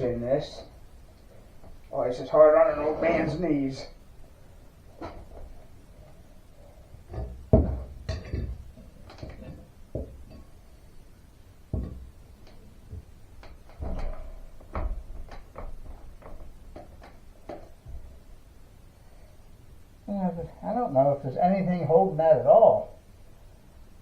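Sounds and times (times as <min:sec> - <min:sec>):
knocks and clatter on metal door: 0:07.1 - 0:10.3.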